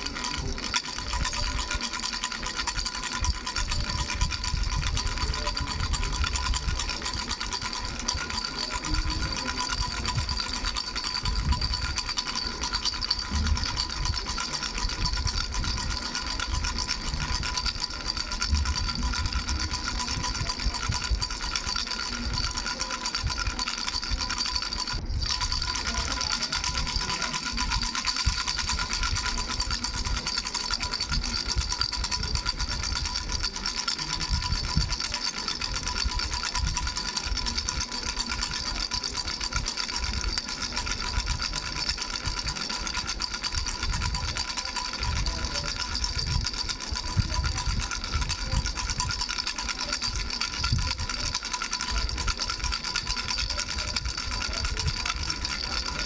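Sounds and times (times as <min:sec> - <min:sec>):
baby rattle bells jingling: 0:00.0 - 0:56.0.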